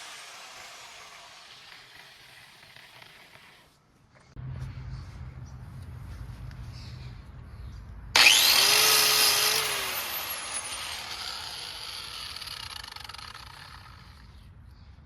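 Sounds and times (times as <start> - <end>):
electric sander motor whining: 8.2 - 14.3.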